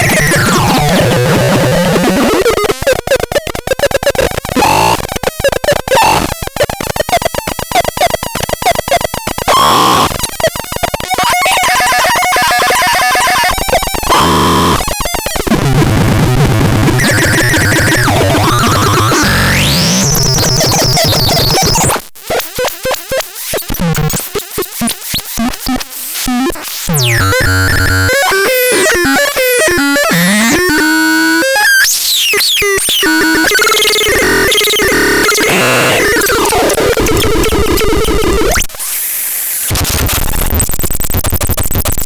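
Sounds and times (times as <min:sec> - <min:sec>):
electronic noise instrument: 0:03.3 - 0:22.0, 0:27.0 - 0:38.6.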